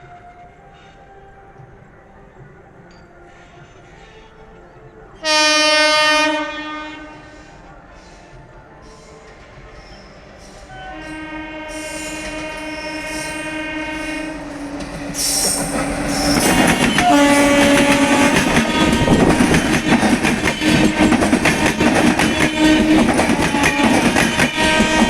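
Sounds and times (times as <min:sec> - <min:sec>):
twin-tone locomotive horn: 0:00.0 - 0:01.8, 0:03.2 - 0:25.0
train wheel clatter and rumble: 0:14.3 - 0:25.0.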